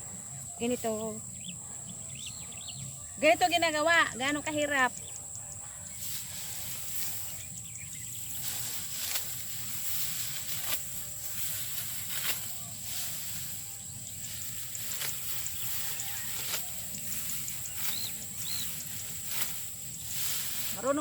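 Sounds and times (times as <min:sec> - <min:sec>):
sickle cutting rice stalks: 0:05.9 - 0:21.0.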